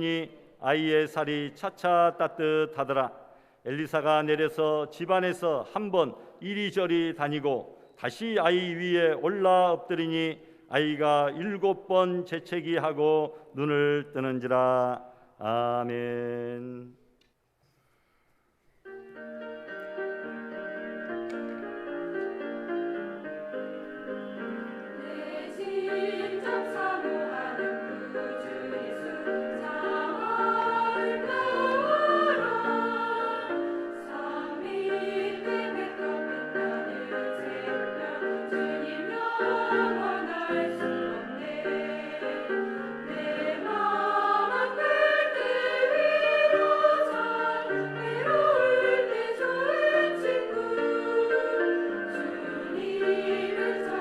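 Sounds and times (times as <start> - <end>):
choir singing: 24.8 - 54.0.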